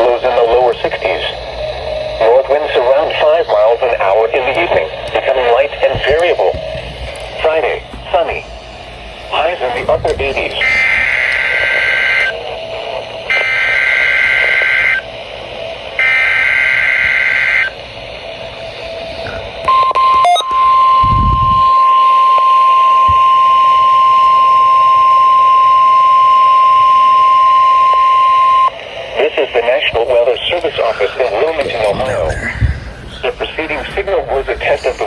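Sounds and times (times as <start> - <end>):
steady warning alarm tone: 0.0 - 35.0
buzzing data burst: 10.3 - 15.1.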